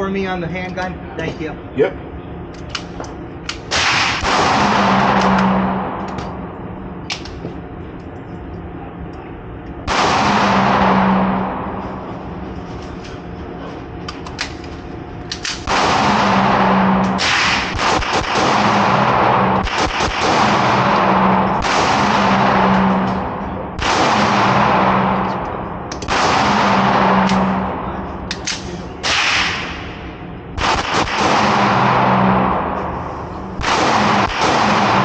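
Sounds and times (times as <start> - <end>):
echoing gunshots: 3.6 - 7.2, 9.8 - 12.5, 15.6 - 35.0.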